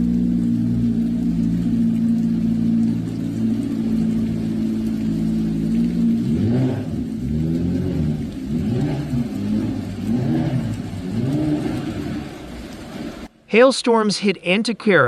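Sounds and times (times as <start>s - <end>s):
car engine revving: 0.0s - 13.3s
car engine idling: 0.0s - 13.5s.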